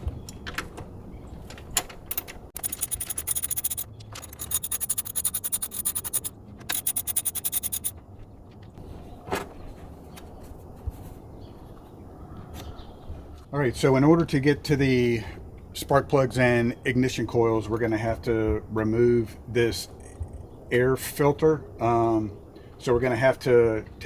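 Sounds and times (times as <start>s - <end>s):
ratchet wrench clicking rapidly: 2.1s - 7.9s.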